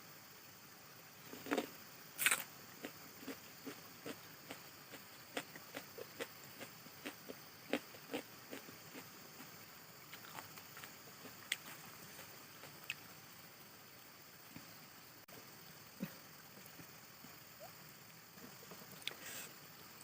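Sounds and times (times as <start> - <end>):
person chewing food: 1.4 - 9.5.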